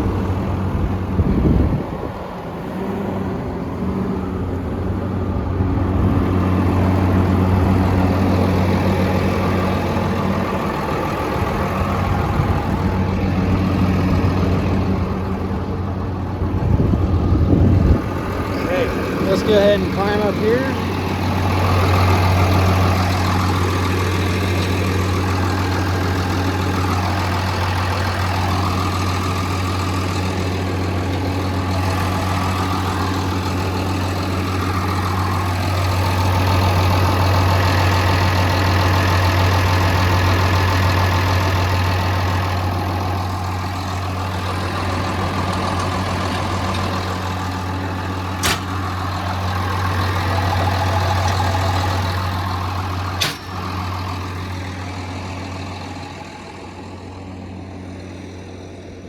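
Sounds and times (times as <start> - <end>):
diesel engine idling: 0.0 - 59.0
sharp click: 48.4 - 48.8, 53.2 - 53.6.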